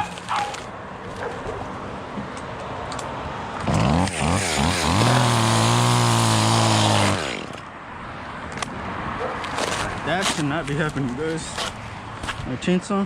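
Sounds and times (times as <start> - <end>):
chainsaw engine revving: 3.6 - 7.6.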